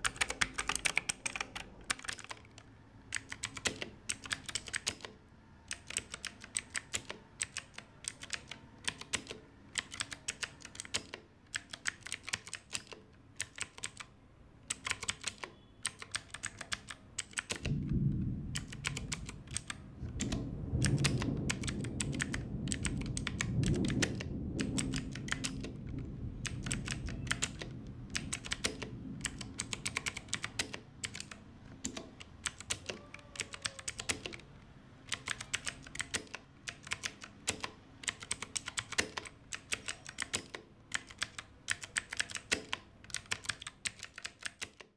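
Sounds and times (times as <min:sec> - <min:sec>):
clicky mechanical keyboard typing: 0:00.0 - 0:44.9
low rumble: 0:17.7 - 0:29.6.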